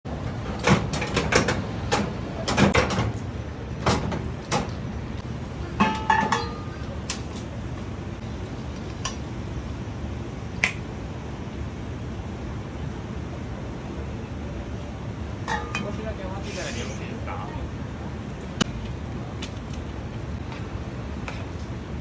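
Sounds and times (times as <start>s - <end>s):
low kitchen hum: 0.1s - 22.0s
metal cooking tools clanking: 5.8s - 6.8s, 15.5s - 16.0s.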